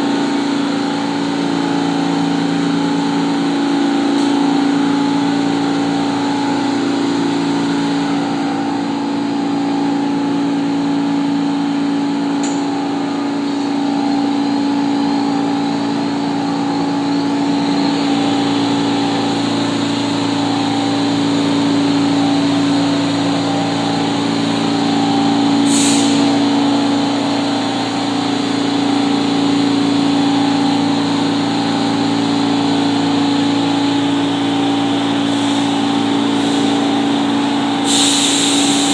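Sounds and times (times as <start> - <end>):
subway train droning hum: 0.0 - 38.9
air hiss burst: 25.6 - 26.3, 37.8 - 38.9.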